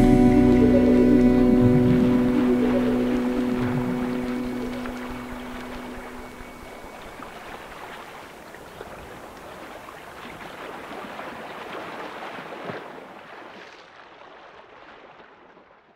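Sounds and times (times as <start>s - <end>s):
background music: 0.0s - 6.3s
water running and splashing: 0.0s - 15.8s.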